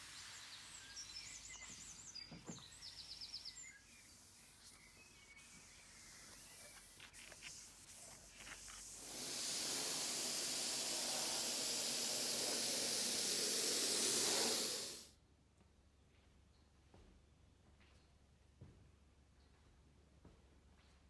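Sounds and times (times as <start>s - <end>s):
paint spray gun hissing: 0.0s - 15.1s.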